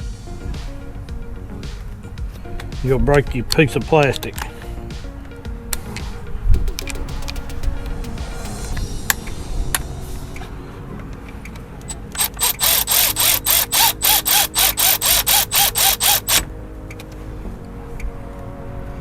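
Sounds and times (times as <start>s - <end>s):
ratchet wrench clicking: 11.9s - 16.5s.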